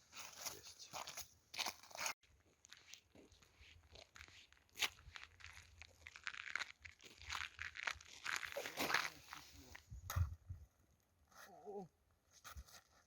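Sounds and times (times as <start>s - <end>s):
snow and ice crunching: 3.9s - 9.8s.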